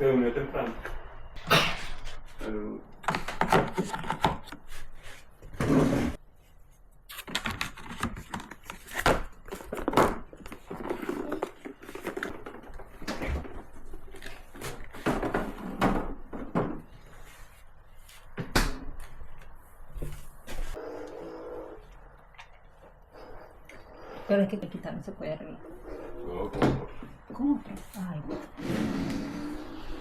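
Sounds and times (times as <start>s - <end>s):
household objects knocking and clattering: 3.0s - 4.6s, 14.6s - 16.9s.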